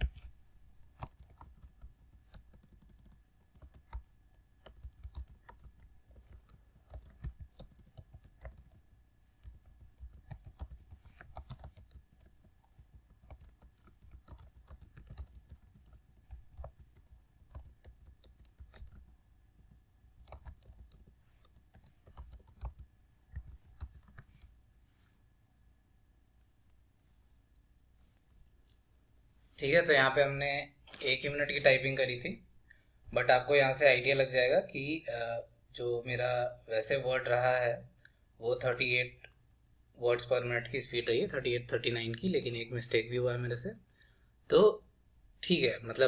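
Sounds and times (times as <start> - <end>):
keyboard typing: 0.0 - 24.6.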